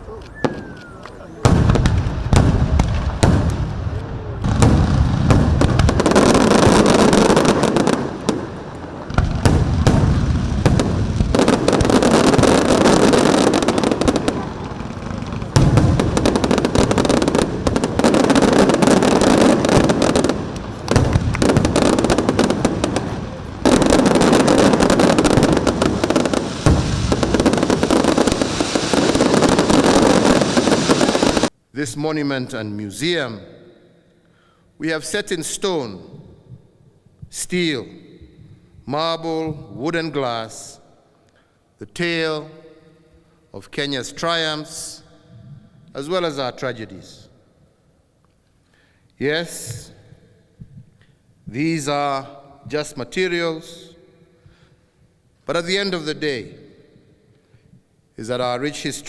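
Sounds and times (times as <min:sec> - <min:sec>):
fireworks bangs and crackles: 0:00.0 - 0:31.5, 0:49.5 - 0:50.0.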